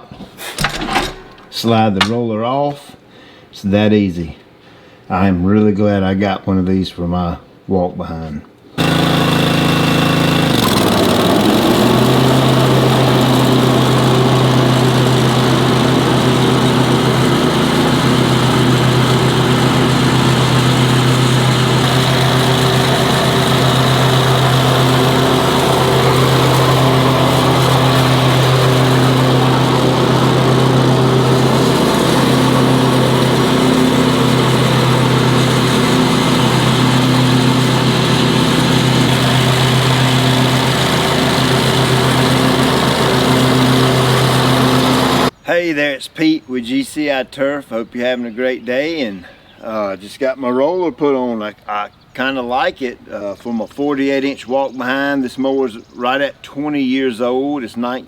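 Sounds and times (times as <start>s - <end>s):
lawn mower engine running: 0.6s - 1.6s, 8.8s - 45.4s.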